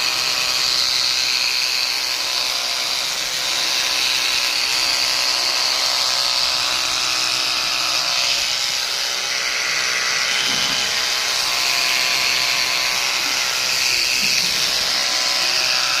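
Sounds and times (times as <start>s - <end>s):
electric hair clipper buzzing: 8.3s - 16.0s.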